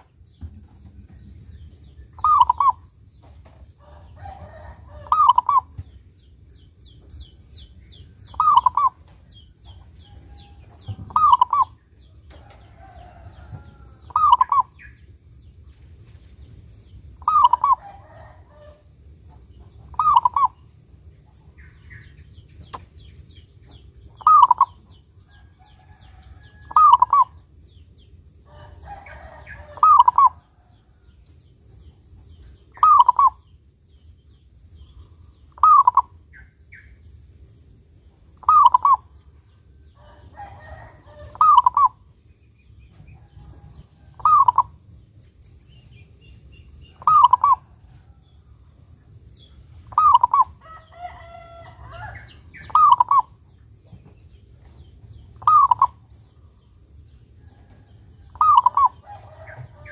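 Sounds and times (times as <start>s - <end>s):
small birds chirping: 0.0s - 59.9s
dove cooing song: 2.0s - 2.9s, 3.8s - 5.9s, 7.3s - 15.0s, 17.2s - 18.9s, 19.7s - 20.7s, 24.1s - 27.4s, 28.5s - 30.9s, 32.6s - 33.4s, 35.1s - 36.2s, 38.4s - 39.1s, 40.0s - 42.1s, 42.9s - 44.8s, 46.9s - 48.2s, 49.8s - 53.4s, 55.3s - 56.5s, 57.5s - 59.9s.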